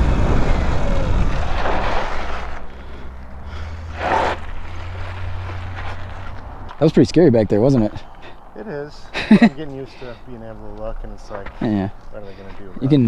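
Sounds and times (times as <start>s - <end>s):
wind rushing over microphone: 0.0s - 3.2s.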